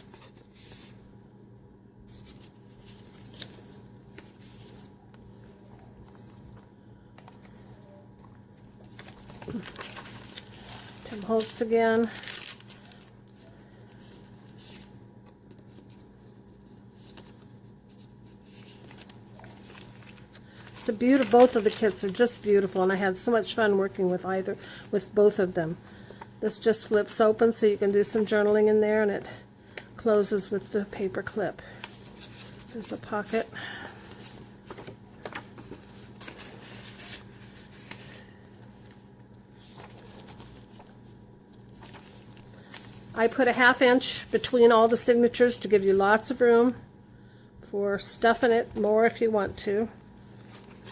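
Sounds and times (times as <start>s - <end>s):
paper pages rustling: 0.0s - 1.1s, 2.1s - 24.2s, 30.5s - 45.0s, 50.0s - 50.9s
faint steady hum: 0.0s - 50.9s.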